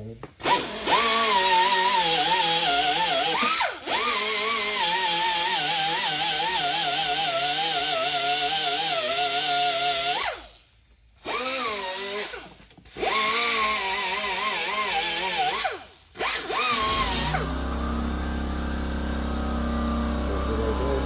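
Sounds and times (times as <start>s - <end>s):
power grinder whining on metal: 16.5s - 21.0s.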